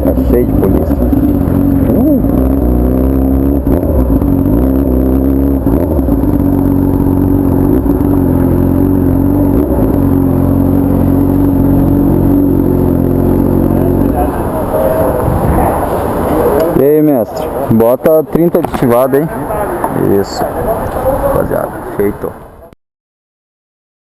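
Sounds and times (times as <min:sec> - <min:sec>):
motorcycle engine at low revs: 0:00.0 - 0:17.5.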